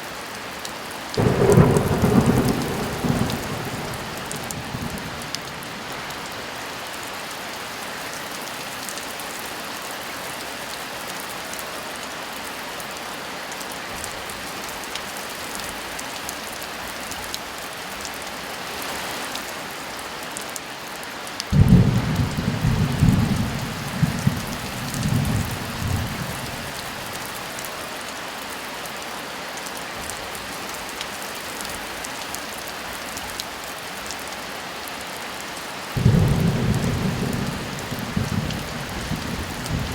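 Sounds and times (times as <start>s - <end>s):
thunder rumbling: 1.2s - 6.6s, 21.5s - 27.5s, 36.0s - 39.9s
heavy rain hissing: 1.2s - 7.4s, 21.5s - 28.0s, 35.9s - 39.9s.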